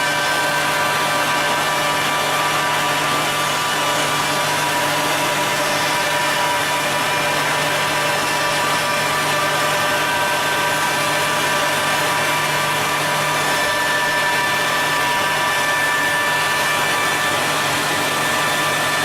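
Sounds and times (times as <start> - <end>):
woodworking machine humming and whining: 0.0 - 19.0.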